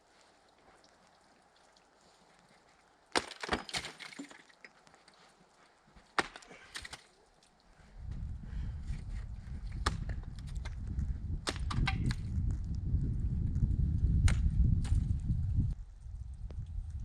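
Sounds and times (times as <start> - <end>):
ice cracking: 2.4 - 7.6
falling ice shards ticking: 3.1 - 4.8
low rumble: 8.0 - 17.0.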